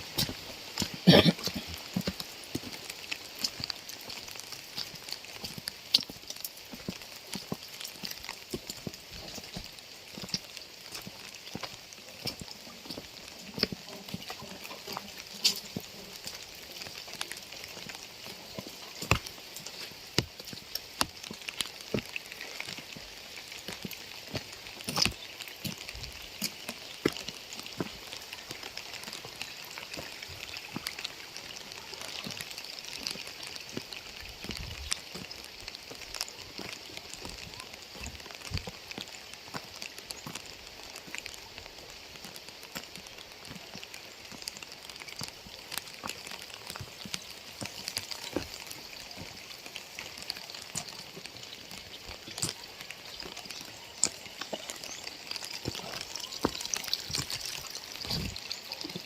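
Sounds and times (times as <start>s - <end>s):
raindrops tapping surfaces: 0.0s - 59.0s
steady rain hiss: 0.0s - 59.0s.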